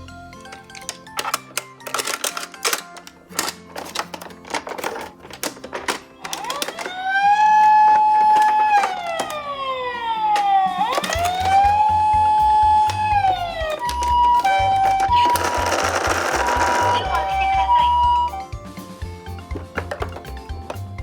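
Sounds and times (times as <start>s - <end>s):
plastic toy cars clicking: 0.4s - 9.6s, 10.4s - 17.7s
toy siren wailing: 6.2s - 18.6s.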